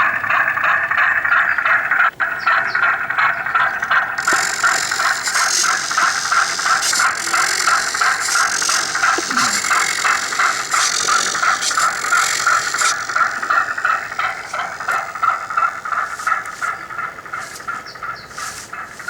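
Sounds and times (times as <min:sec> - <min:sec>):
model boat motor rattling: 0:00.0 - 0:19.0
high hiss: 0:04.2 - 0:19.0.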